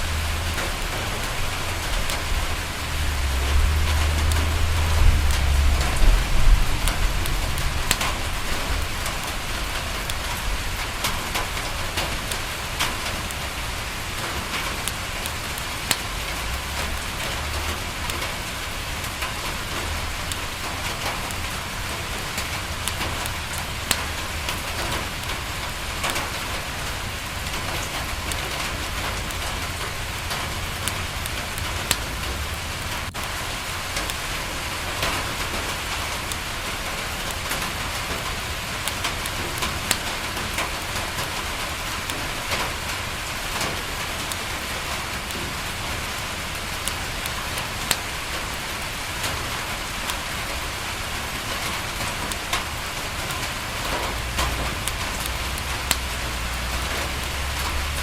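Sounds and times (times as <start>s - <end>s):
fireplace crackling: 0.0s - 48.8s
rain on a window: 0.0s - 58.0s.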